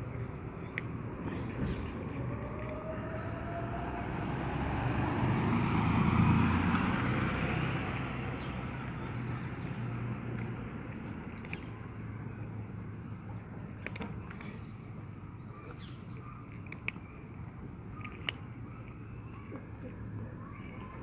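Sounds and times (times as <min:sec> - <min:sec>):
vehicle passing by: 0:01.3 - 0:10.8.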